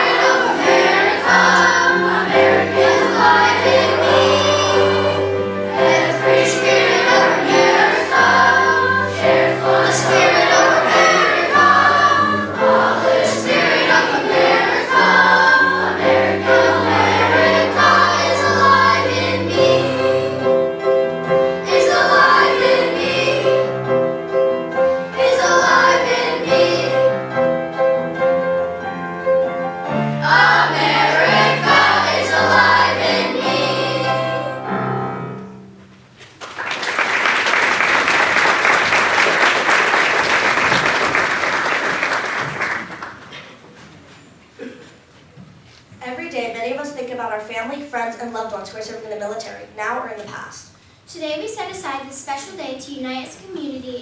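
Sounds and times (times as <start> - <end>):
children's choir singing: 0.0 - 35.4, 36.4 - 43.9
instrumental accompaniment: 0.0 - 36.4.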